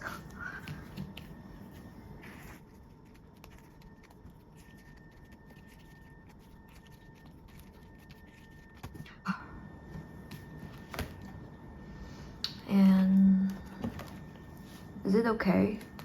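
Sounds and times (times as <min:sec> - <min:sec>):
low room noise: 0:00.0 - 0:16.0.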